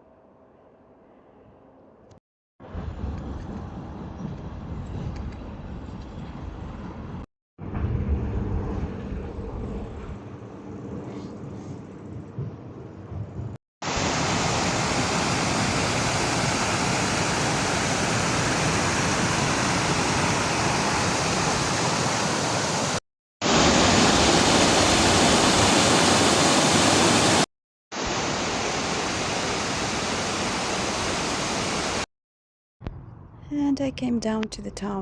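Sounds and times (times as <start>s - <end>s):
waterfall rushing: 13.8s - 27.4s, 28.0s - 32.1s.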